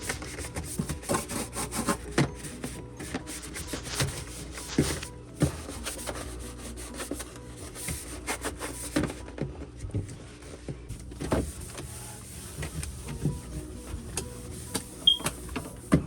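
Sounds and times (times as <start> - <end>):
cloth wiping surfaces: 11.2 - 15.9.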